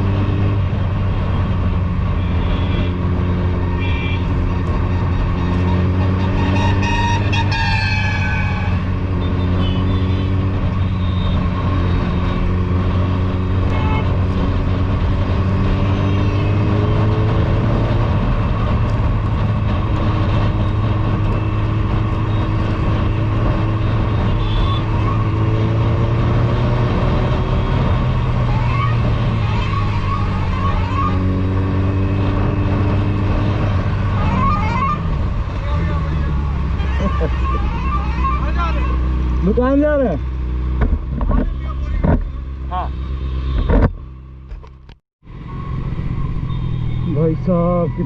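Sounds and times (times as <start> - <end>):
motorcycle engine while riding: 0.0 - 48.0
vehicle horn: 2.2 - 3.0, 3.6 - 4.4, 5.3 - 11.5, 13.6 - 14.2, 15.8 - 16.8, 23.8 - 25.4.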